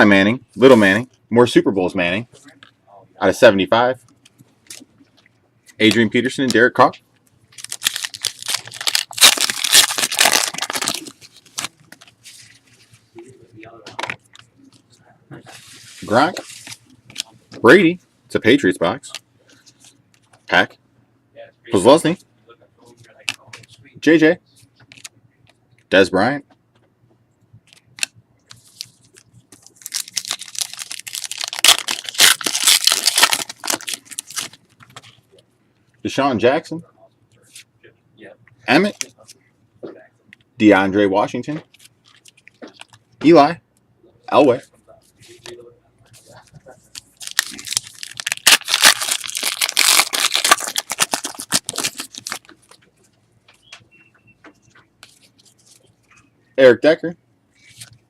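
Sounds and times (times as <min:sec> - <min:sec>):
foil wrapper crinkling: 0:07.5 - 0:12.7, 0:28.0 - 0:35.2, 0:46.9 - 0:52.8.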